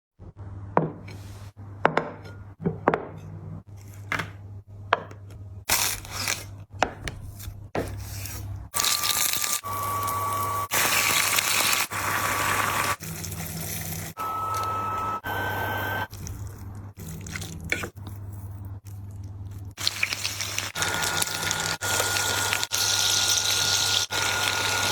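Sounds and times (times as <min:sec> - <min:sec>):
water running: 0:08.8 - 0:15.2, 0:19.8 - 0:24.9.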